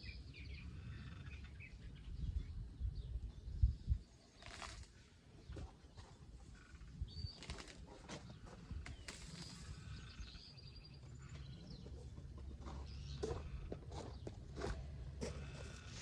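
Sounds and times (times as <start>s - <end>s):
plants and soil rustling: 4.3s - 5.7s, 7.3s - 10.0s.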